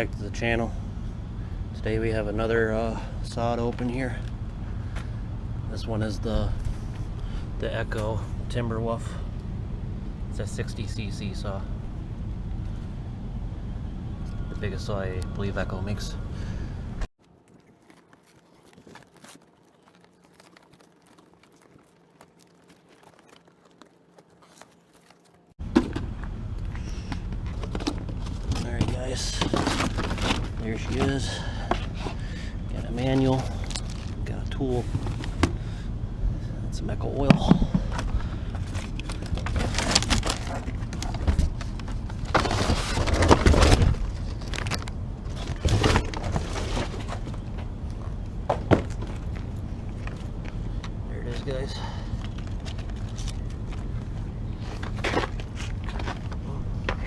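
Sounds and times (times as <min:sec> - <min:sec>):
packaging crinkling: 0:17.2 - 0:25.6, 0:33.3 - 0:34.2, 0:38.6 - 0:41.2.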